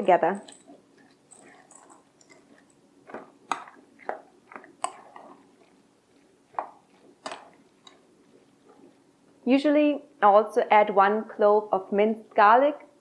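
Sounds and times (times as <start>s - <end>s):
spoon squelching thick mixture: 0.4s - 9.4s.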